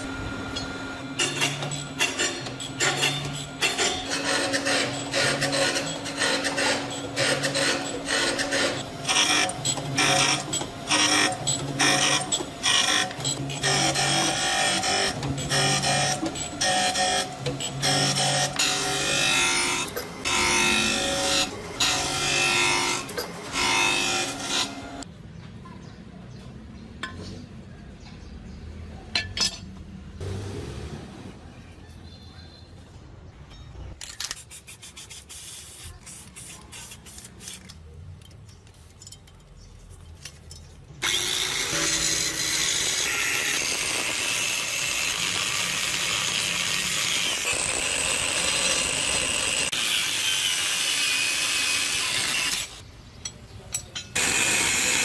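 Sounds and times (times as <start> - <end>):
grinder grinding steel: 1.2 - 25.1, 41.0 - 52.9, 53.8 - 55.0.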